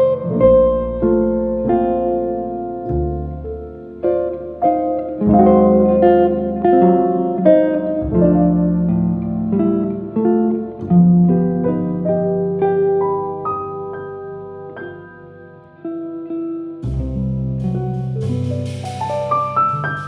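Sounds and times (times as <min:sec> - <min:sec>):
plucked string melody: 0:00.0 - 0:20.0
sustained low bass notes: 0:00.2 - 0:12.9, 0:16.8 - 0:20.0.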